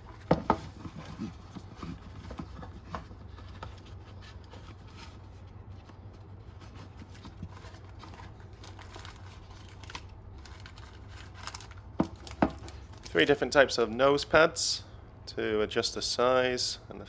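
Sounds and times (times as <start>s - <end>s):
packaging rustling: 0.0s - 13.4s
steady low hum: 0.0s - 17.0s.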